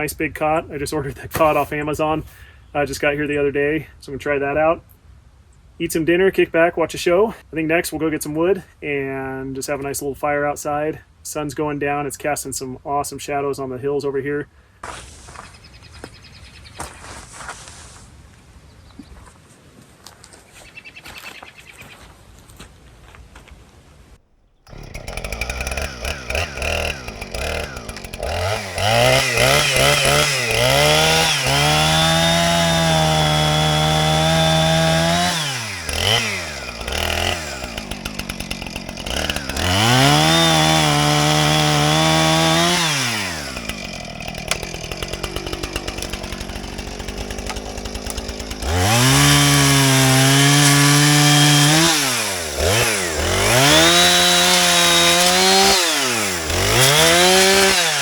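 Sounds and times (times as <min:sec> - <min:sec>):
chainsaw cutting wood: 0:24.6 - 0:58.0.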